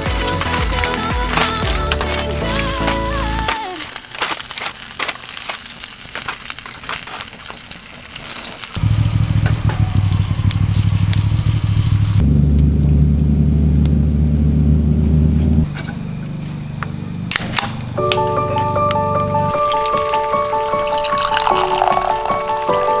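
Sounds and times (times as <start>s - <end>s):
food sizzling in a pan: 0.0s - 12.0s, 17.8s - 23.0s
loud low hum: 8.8s - 19.5s.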